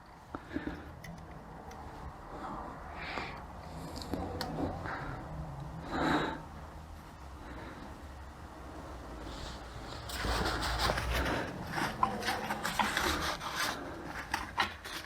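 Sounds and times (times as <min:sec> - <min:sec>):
steel plates rubbing and scraping: 0:09.3 - 0:15.0.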